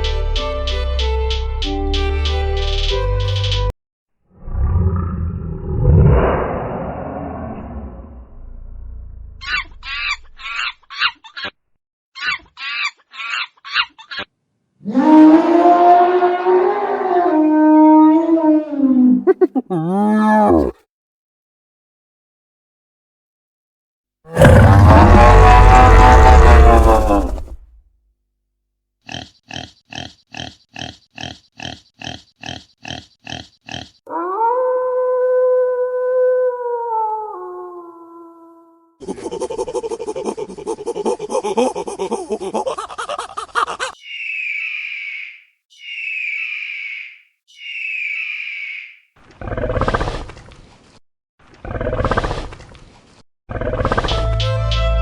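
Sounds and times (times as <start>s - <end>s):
deep animal roars: 4.3s - 9.4s, 19.3s - 20.8s, 24.3s - 27.8s, 53.5s - 54.1s
high thin wavering cry: 19.3s - 20.7s, 44.0s - 49.0s
pig grunting: 19.3s - 20.8s, 24.3s - 27.7s, 29.1s - 34.0s, 53.5s - 54.2s
long pitched call: 44.0s - 49.0s.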